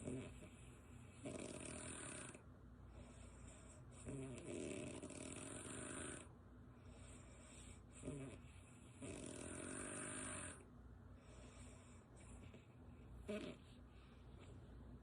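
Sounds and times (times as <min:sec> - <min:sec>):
woman snoring: 0:01.2 - 0:02.4, 0:04.0 - 0:06.3, 0:09.0 - 0:10.6, 0:13.3 - 0:13.6.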